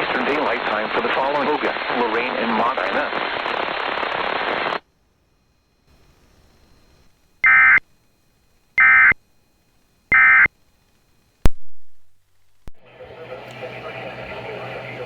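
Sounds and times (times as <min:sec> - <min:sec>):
screechy digital data tone: 0:07.4 - 0:07.8, 0:08.8 - 0:09.2, 0:10.1 - 0:10.5.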